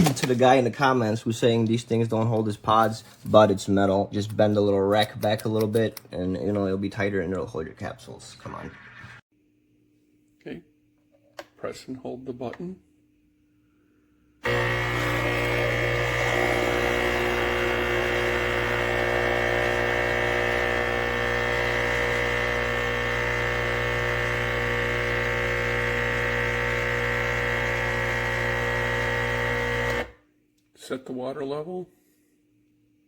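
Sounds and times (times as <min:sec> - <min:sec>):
espresso machine pump humming: 0:14.4 - 0:30.1.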